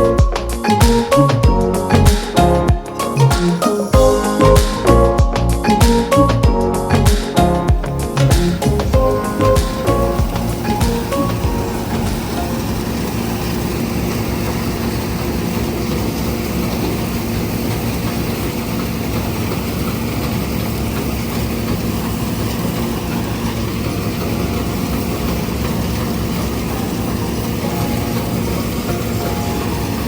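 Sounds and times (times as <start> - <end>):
combine harvester running: 6.8 - 30.0.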